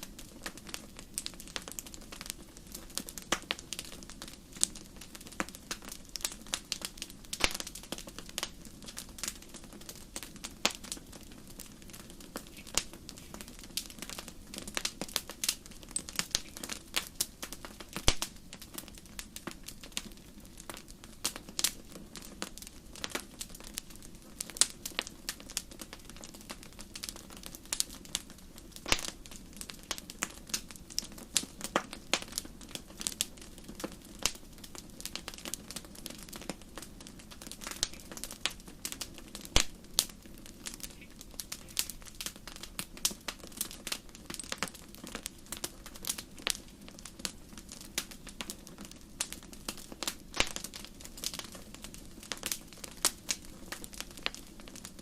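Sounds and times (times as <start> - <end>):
campfire crackling: 0.0 - 55.0
low steady hiss: 0.0 - 55.0
loud fire pop: 28.9 - 29.2, 50.4 - 50.6.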